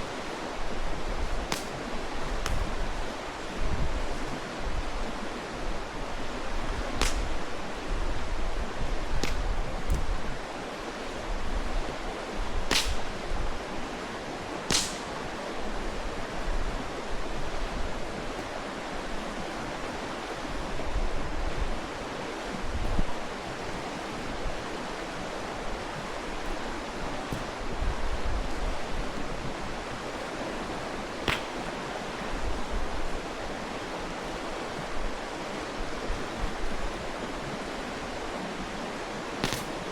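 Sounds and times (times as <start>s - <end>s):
stream rushing: 0.0s - 39.9s
campfire pops and cracks: 1.4s - 1.8s, 2.4s - 2.8s, 7.0s - 7.4s, 9.2s - 10.1s, 12.7s - 13.1s, 14.7s - 15.2s, 31.2s - 31.7s, 39.4s - 39.9s.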